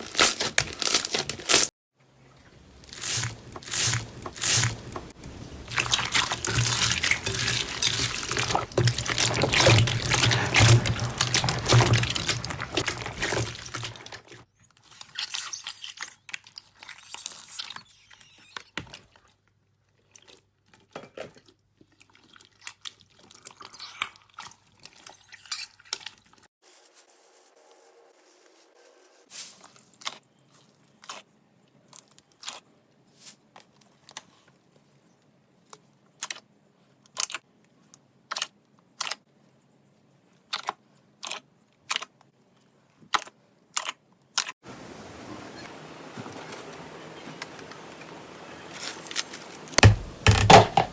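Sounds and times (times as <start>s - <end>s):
crunchy slime crackling: 0.0s - 1.7s, 2.6s - 14.4s.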